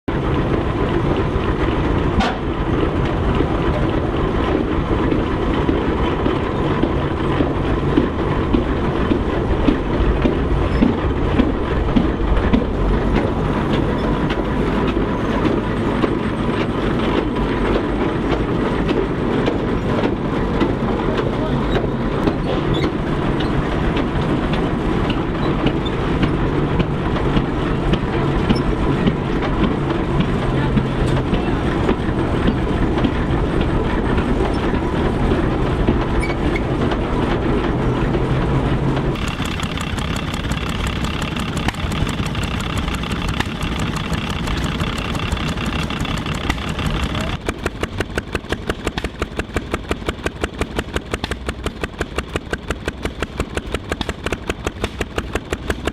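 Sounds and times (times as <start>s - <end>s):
heavy machinery rumble: 0.1s - 55.9s
machine whine and clatter: 0.1s - 55.9s
rhythmic engine beat: 39.1s - 55.9s.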